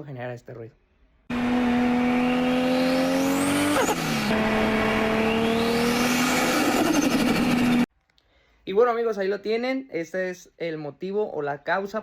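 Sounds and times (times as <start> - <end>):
turbocharged car engine pulling: 1.3 - 7.9.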